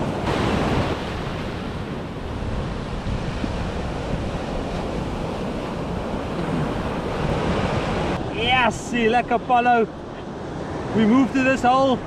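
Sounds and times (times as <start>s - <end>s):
wind buffeting microphone: 0.0s - 9.5s
surf on beach: 0.0s - 12.0s.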